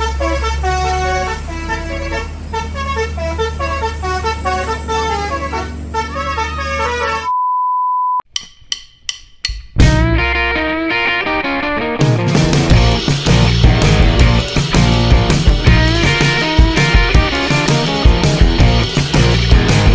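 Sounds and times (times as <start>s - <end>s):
musical bus horn: 0.0s - 7.4s.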